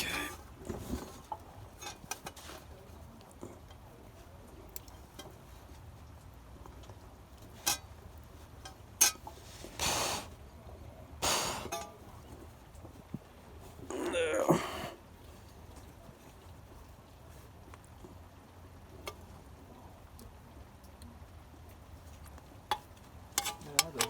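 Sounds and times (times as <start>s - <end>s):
rustling scrapes: 9.2s - 10.0s.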